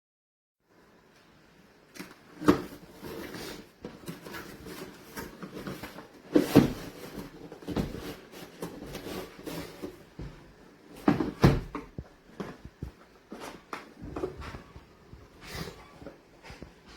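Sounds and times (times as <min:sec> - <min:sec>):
hard objects knocking and clattering: 0:04.0 - 0:15.4.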